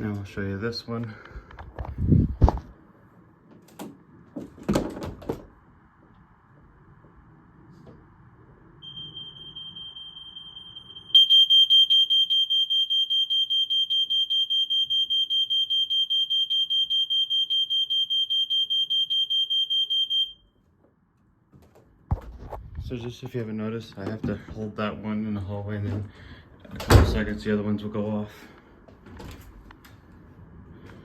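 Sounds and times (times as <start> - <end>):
smoke alarm pulsing tone: 8.8 - 20.6.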